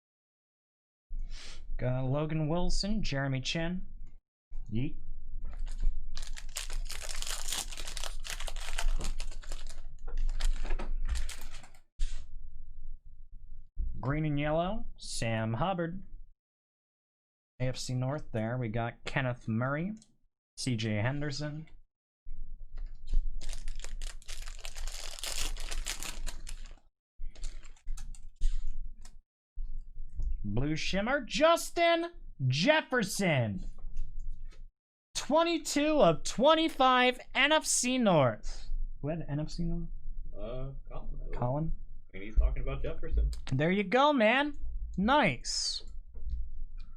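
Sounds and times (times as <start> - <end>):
plastic wrapping crinkling: 5.5 - 11.8, 23.4 - 28.2
trading cards clicking and rustling: 5.6 - 11.8, 27.4 - 28.7.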